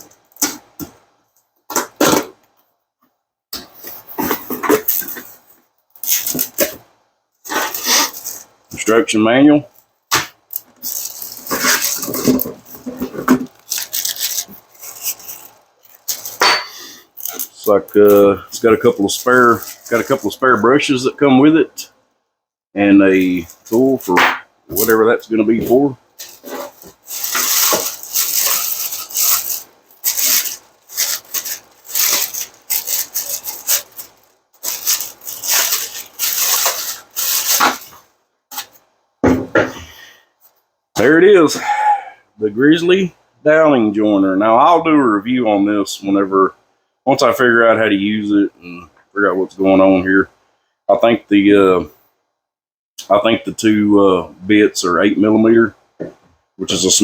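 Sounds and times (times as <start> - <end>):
packaging rustling and crinkling: 3.8 - 6.8, 7.5 - 8.5, 10.5 - 16.5, 17.2 - 20.6, 23.1 - 38.8.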